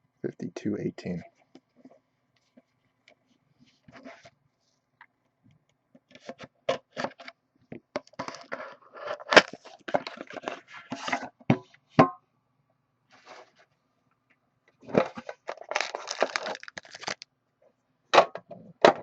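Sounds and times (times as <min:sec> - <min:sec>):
packaging crackling and tearing: 0:15.4 - 0:17.2.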